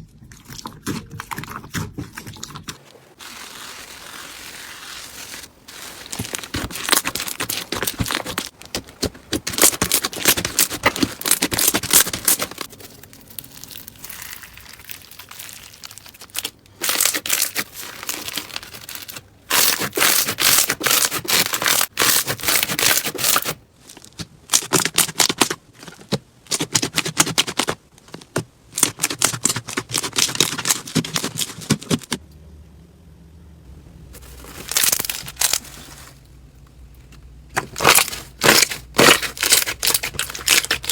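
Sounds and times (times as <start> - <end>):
slime crackling and popping: 2.6 - 23.6, 37.5 - 40.9.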